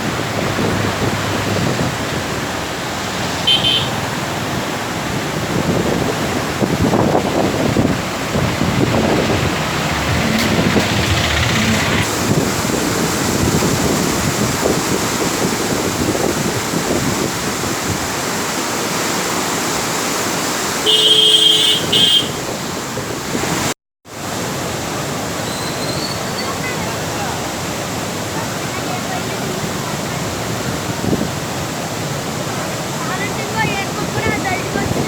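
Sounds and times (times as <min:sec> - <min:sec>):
floodwater rushing through barrage: 0:00.0 - 0:35.0
vehicle horn: 0:03.5 - 0:04.0, 0:09.9 - 0:12.1, 0:20.9 - 0:22.4.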